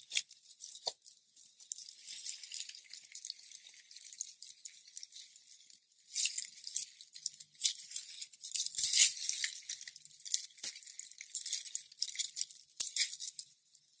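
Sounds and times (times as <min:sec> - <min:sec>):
slime crackling and popping: 0:00.0 - 0:14.0.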